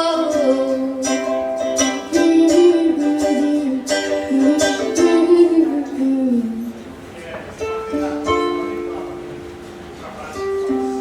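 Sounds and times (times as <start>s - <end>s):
ukulele strummed in chords: 0.0s - 6.8s, 7.5s - 11.0s.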